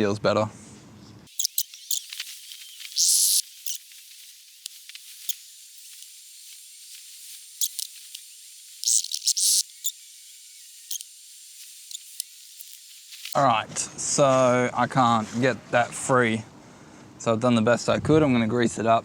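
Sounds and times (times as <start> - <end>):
aerosol spray hissing: 1.3 - 13.4
small clicks: 1.3 - 13.4.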